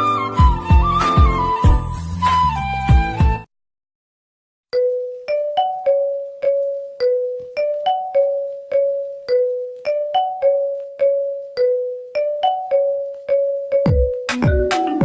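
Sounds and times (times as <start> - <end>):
ringtone melody: 4.8 - 15.0.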